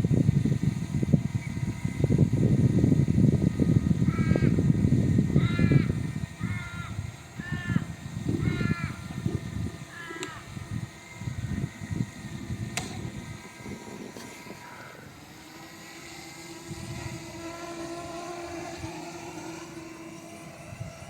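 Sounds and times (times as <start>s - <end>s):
steady motor hum: 0.0s - 21.0s
wind buffeting microphone: 0.0s - 21.0s
sharp click: 12.7s - 13.0s.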